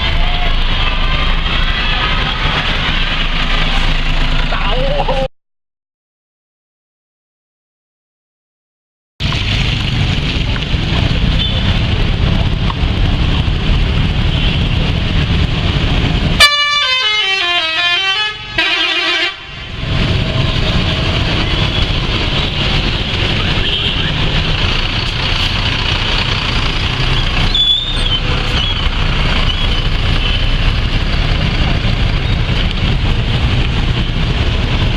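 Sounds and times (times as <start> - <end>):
low vehicle rumble: 0.0 - 5.3, 9.2 - 16.5, 18.3 - 34.9
bus musical horn playing a tune: 16.4 - 19.7.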